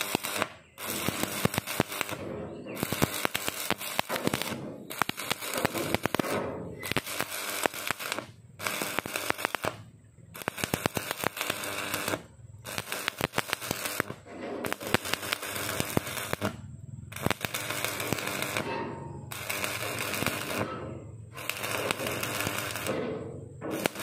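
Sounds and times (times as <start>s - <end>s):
welding arc crackling: 0.0s - 24.0s.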